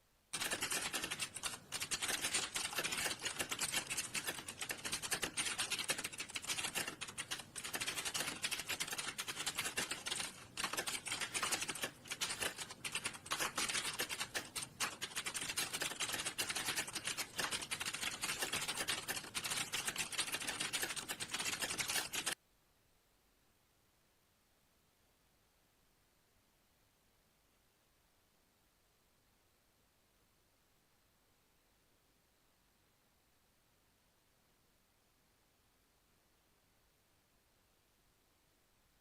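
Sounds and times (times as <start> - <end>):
fast typing on a keyboard: 0.3 - 22.4.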